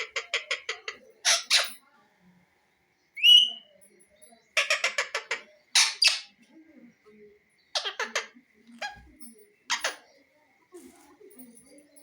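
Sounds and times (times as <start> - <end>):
parrot chattering: 0.0 - 1.8, 4.6 - 6.3, 7.7 - 9.0
parrot squawks: 0.0 - 1.8, 4.6 - 6.3.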